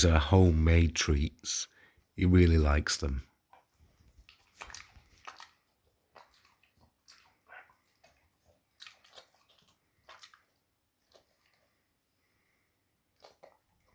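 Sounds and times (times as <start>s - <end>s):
dog chewing crunchy treat: 3.5s - 11.8s, 13.1s - 13.9s.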